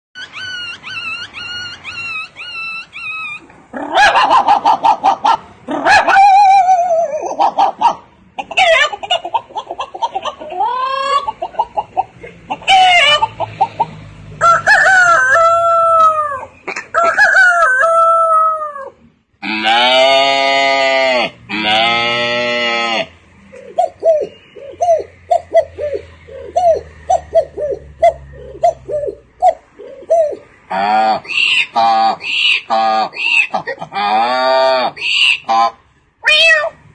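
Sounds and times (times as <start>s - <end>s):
man imitating pigeon cooing: 3.3s - 7.5s, 23.6s - 32.0s
man imitating dog yaps: 3.8s - 4.7s, 5.7s - 8.0s
man imitating dog howl: 5.7s - 7.3s
man imitating dog whines: 5.7s - 7.4s.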